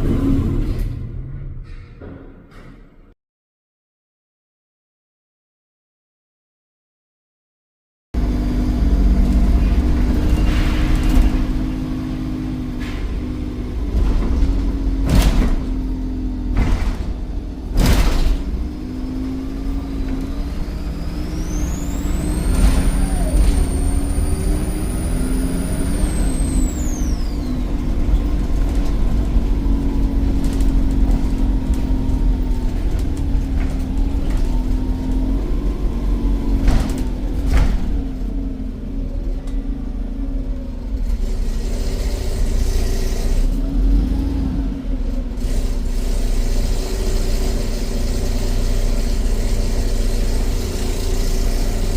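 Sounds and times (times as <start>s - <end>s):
bus engine drone: 0.0s - 3.2s, 8.2s - 51.9s
turbocharger whistle: 20.8s - 27.8s.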